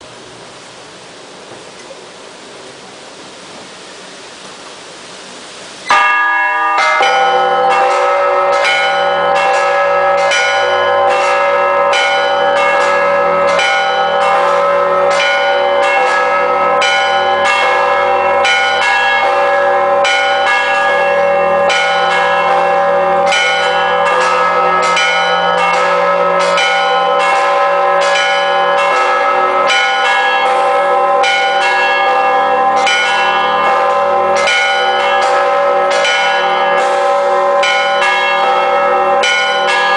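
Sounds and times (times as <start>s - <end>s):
deep bass bell tone: 5.9s - 39.9s
heavy bells humming: 5.9s - 39.9s
smaller bells striking: 5.9s - 39.9s.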